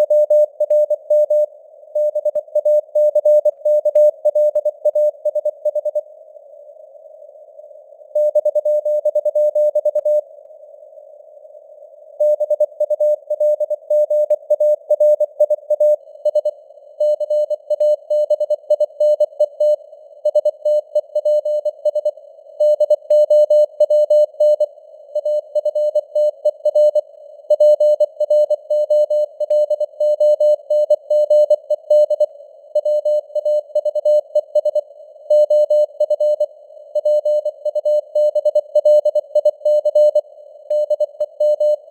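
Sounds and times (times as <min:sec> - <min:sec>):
morse code beeps: 0:12.2 - 0:34.8, 0:35.4 - 0:41.9.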